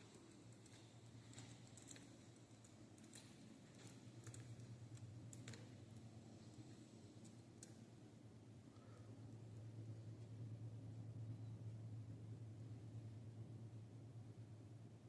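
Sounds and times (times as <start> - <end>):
faint light clicks: 0.0 - 7.9
low steady hum: 0.0 - 15.0.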